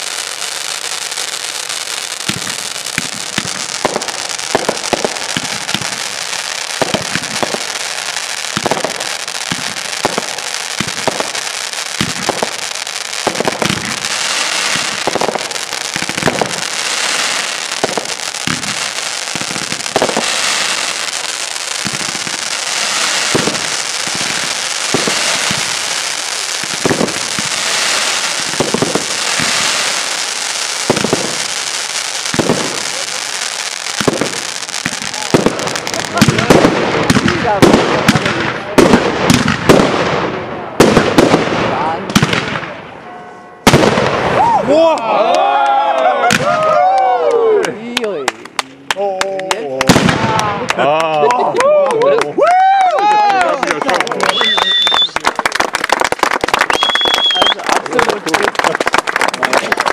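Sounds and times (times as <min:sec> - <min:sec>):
firework crackling hiss: 0:00.0 - 0:42.6
firework shells bursting: 0:01.3 - 0:33.2, 0:33.9 - 0:40.2, 0:47.9 - 0:50.9, 0:53.6 - 0:59.9.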